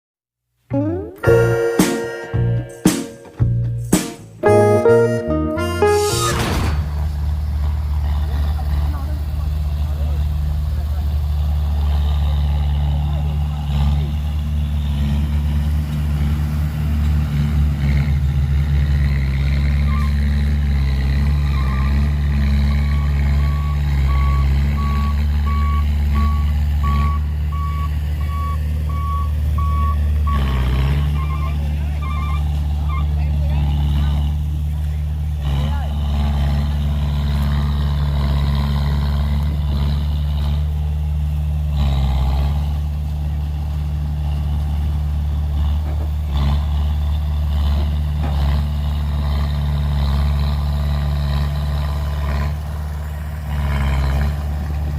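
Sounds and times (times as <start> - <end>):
heavy diesel engine droning: 0.7 - 54.9
faint short beep: 23.0 - 30.5.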